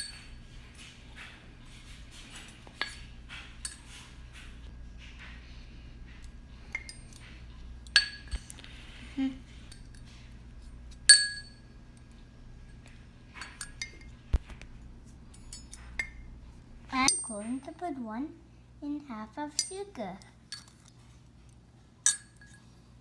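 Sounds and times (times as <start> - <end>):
metal spoon clinking on mug: 6.7 - 8.5, 11.1 - 11.6, 20.5 - 20.9, 22.1 - 22.7.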